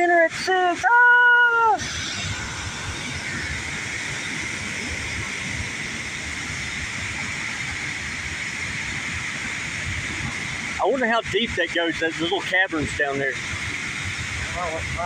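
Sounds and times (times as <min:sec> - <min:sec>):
large waterfall rushing: 0:00.0 - 0:15.0.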